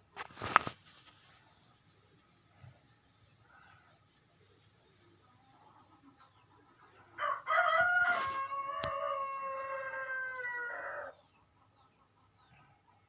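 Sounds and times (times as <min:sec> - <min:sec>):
rooster crowing: 0:07.2 - 0:11.2.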